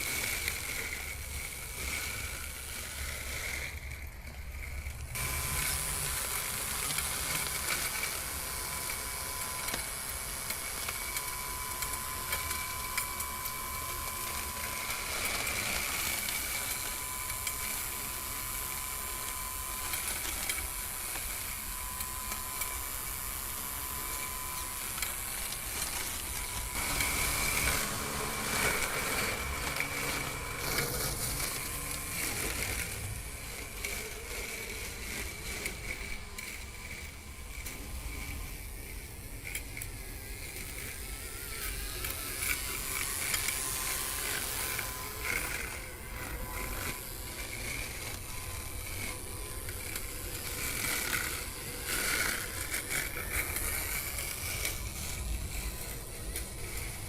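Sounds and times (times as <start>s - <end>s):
electric motor whine: 0.0s - 57.0s
whirring clicking geared drive: 0.0s - 57.0s.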